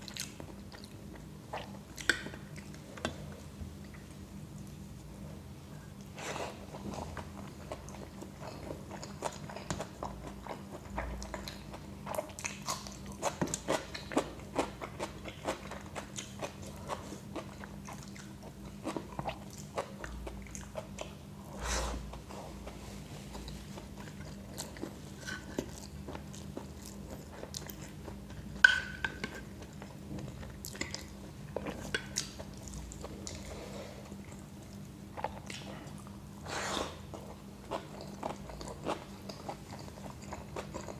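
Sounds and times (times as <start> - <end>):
chewing with crunches: 0.0 - 40.9
steady low hum: 0.0 - 40.9.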